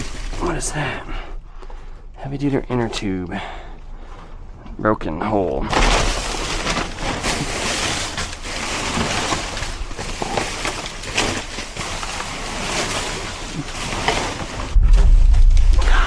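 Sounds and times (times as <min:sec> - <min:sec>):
trash rustling: 0:00.0 - 0:03.2, 0:03.9 - 0:16.0
knocks and scrapes in dumpster: 0:05.6 - 0:16.0.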